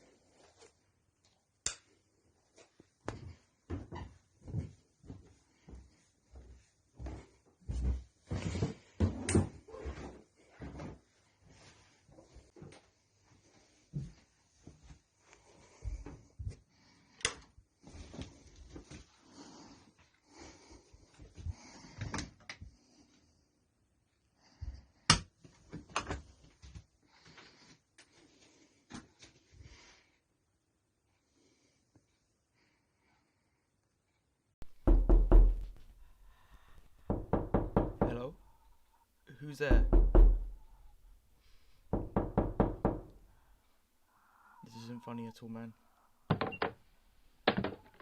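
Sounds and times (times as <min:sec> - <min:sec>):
knocks and thumps: 0:34.6 - 0:36.0, 0:36.8 - 0:38.4, 0:39.7 - 0:41.1, 0:41.9 - 0:43.2, 0:46.3 - 0:46.8, 0:47.4 - 0:48.0.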